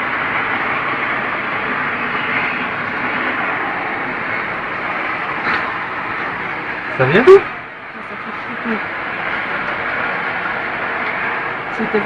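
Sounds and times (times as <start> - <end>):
loud roaring from the sky: 0.0 - 12.0
people talking: 7.0 - 8.9, 11.8 - 12.0.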